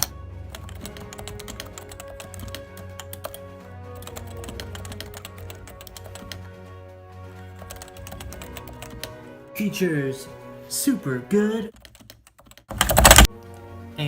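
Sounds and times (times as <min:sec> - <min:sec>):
rapid keyboard typing: 0:00.0 - 0:06.5, 0:07.5 - 0:09.2, 0:11.7 - 0:13.3
background music: 0:00.0 - 0:14.0.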